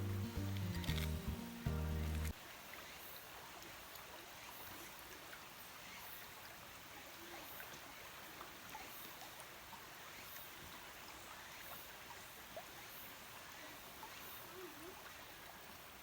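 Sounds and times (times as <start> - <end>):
background music: 0.0 - 2.4
shallow stream flowing: 0.0 - 16.0.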